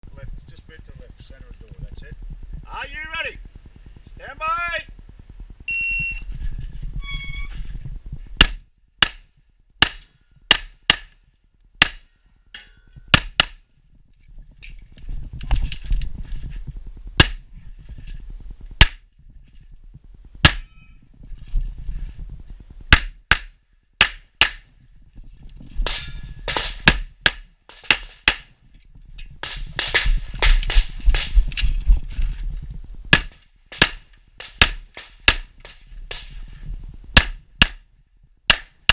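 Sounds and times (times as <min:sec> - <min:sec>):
low rumble: 0:00.0 - 0:09.8.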